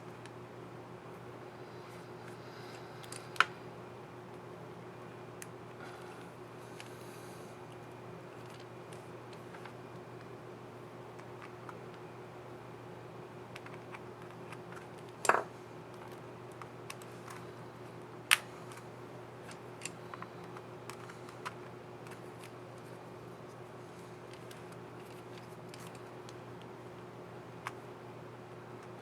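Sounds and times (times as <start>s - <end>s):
sharp plastic snaps: 18.3s - 18.8s.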